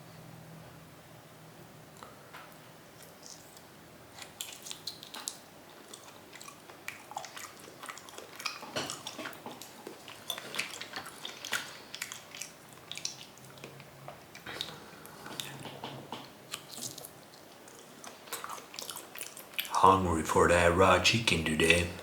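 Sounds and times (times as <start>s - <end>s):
wet chewing mouth sounds: 3.0s - 15.8s, 16.5s - 19.8s.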